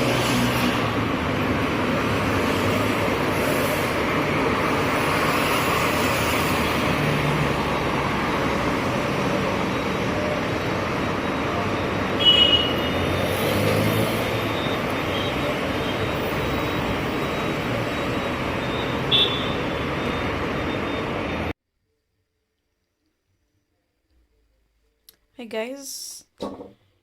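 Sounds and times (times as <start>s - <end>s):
passing vehicles rumble: 0.0s - 21.5s.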